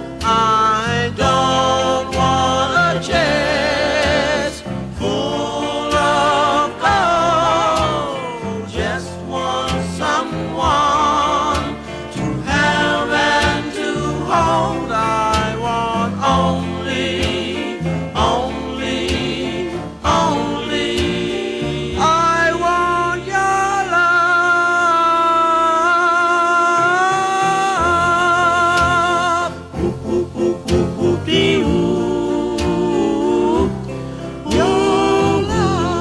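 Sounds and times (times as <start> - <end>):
soul record with band and singing: 0.0 - 36.0.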